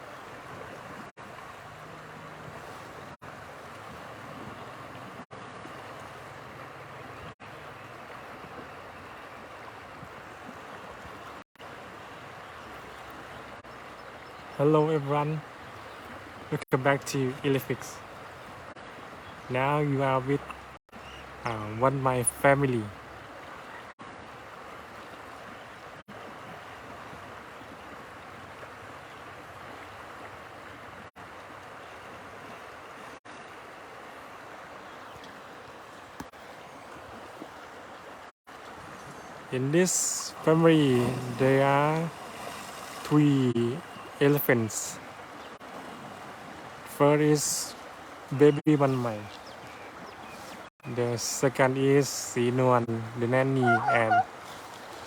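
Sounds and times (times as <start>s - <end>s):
flowing water rushing: 0.0s - 55.0s.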